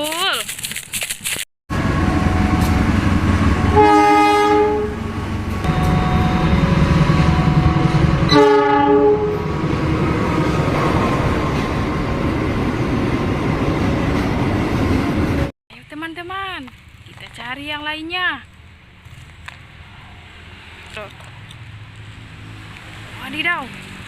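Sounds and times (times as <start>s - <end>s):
train horn blasts: 1.8s - 10.0s.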